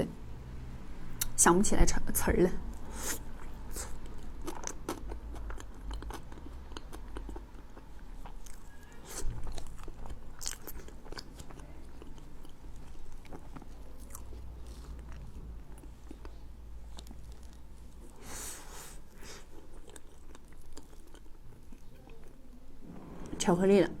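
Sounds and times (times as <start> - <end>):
person chewing with mouth clicks: 2.8 - 18.2, 18.8 - 22.4.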